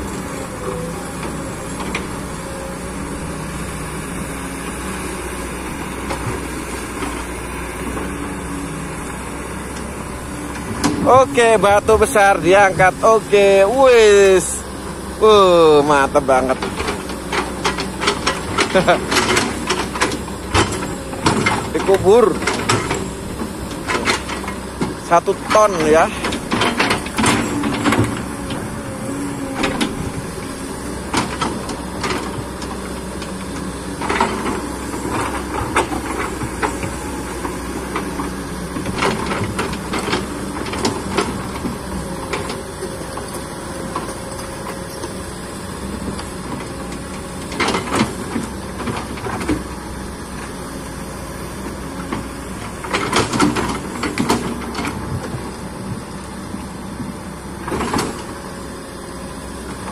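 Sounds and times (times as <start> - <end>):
excavator diesel engine: 0.0 - 59.9.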